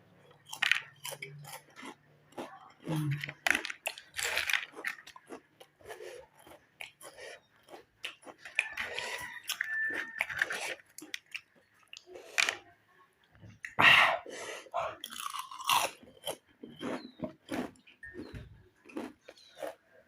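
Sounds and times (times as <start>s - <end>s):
chewing crunchy chips: 0.2s - 12.7s, 14.7s - 20.0s.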